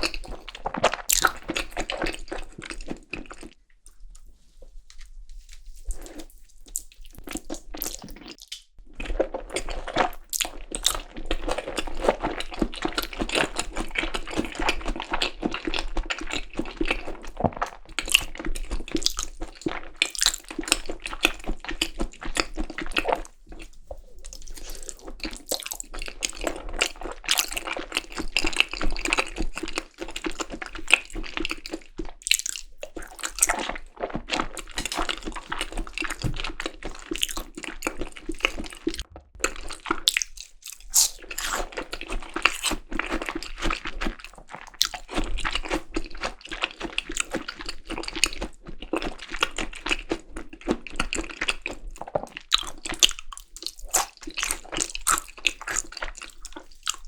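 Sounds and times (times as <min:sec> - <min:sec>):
wet chewing with crunching: 0:00.0 - 0:57.0.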